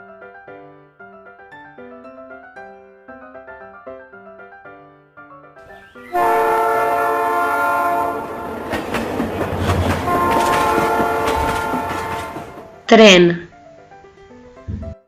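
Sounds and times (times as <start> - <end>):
train horn blast: 6.1 - 8.8, 9.7 - 12.8
train clattering over rails: 6.2 - 12.9.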